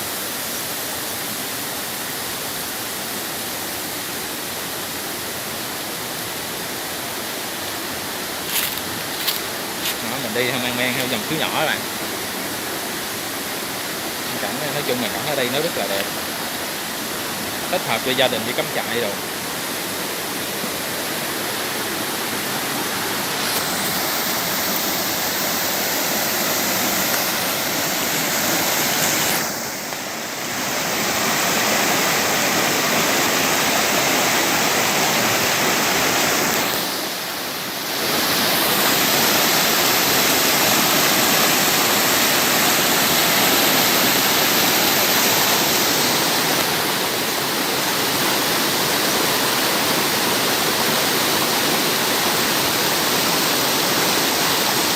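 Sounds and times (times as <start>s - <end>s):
stream flowing over rocks: 0.0s - 54.9s.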